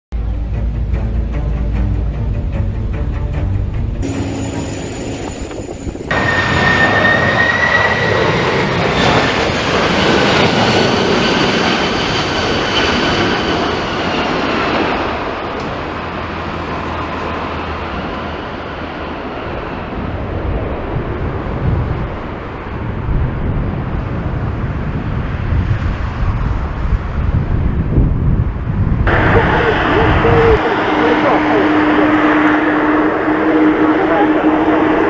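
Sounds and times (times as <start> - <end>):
jet engines running: 4.0 - 20.4, 29.1 - 35.0.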